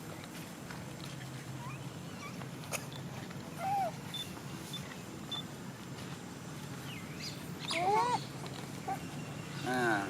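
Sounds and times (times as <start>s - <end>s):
monkey calling: 1.6s - 4.3s, 7.6s - 9.2s.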